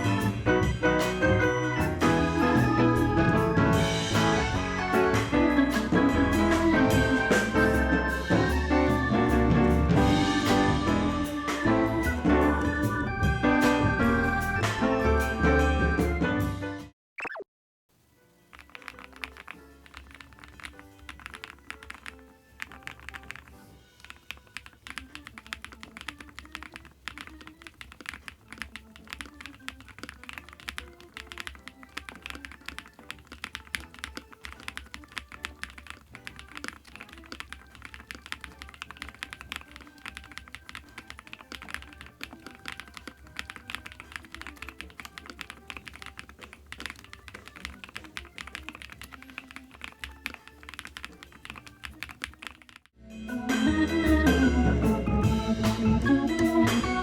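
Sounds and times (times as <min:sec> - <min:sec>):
background music: 0:00.0 - 0:16.9, 0:18.0 - 0:57.0
mechanical keyboard typing: 0:18.4 - 0:52.9.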